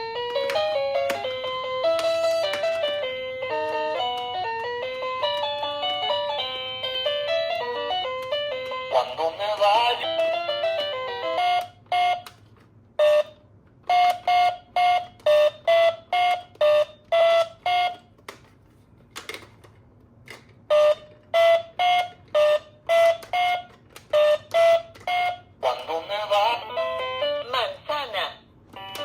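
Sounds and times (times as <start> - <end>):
two-tone beeping alarm: 11.2 - 12.3, 13.0 - 18.0, 20.7 - 25.5.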